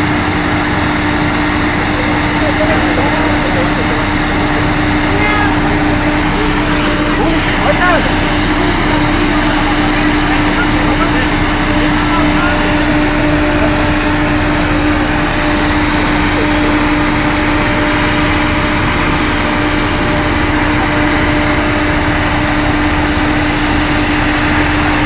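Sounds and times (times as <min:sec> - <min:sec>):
drilling rig engine drone: 0:00.0 - 0:25.0.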